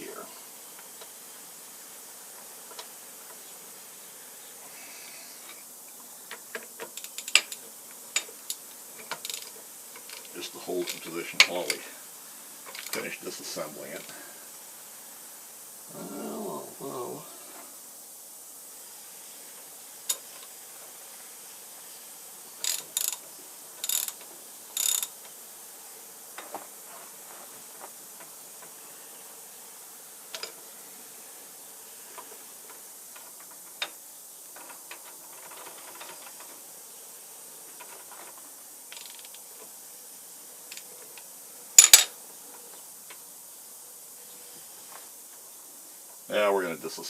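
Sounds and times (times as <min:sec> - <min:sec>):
hand tools clinking on metal: 0:41.8 - 0:42.1.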